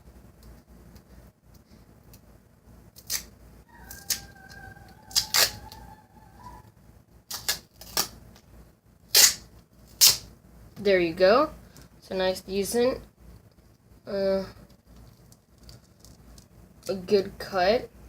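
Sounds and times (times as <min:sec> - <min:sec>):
tape being cut by hand: 0:03.0 - 0:03.3, 0:05.1 - 0:05.8, 0:07.3 - 0:08.2, 0:09.1 - 0:10.3.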